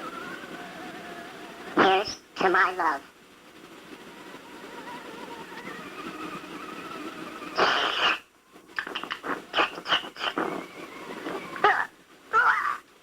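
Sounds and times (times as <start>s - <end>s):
person choking and sputtering: 7.6s - 8.2s, 8.8s - 10.6s, 11.6s - 12.8s.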